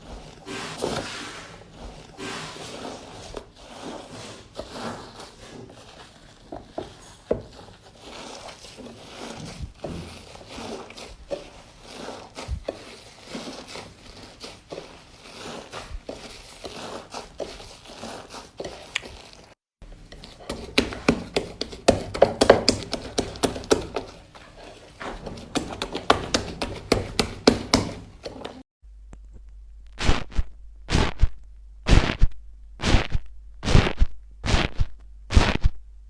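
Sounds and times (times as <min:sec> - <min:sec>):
slime squeezed with sticky pops: 0:30.0 - 0:35.8.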